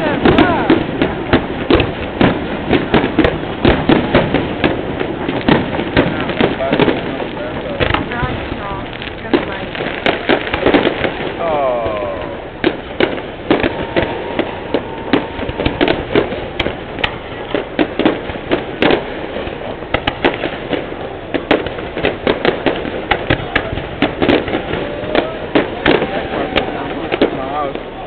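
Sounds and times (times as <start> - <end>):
continuous rumble: 0.0 - 28.0
fireworks bangs and crackles: 0.0 - 28.0.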